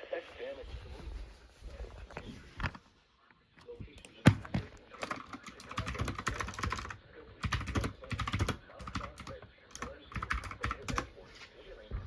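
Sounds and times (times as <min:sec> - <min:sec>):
typing on computer keyboard: 0:05.0 - 0:11.1.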